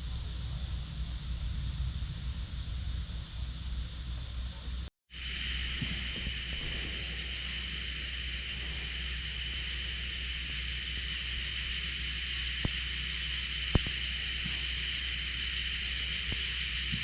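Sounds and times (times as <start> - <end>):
crickets trilling: 0.0 - 17.0
faint high insect chirp: 0.0 - 17.0.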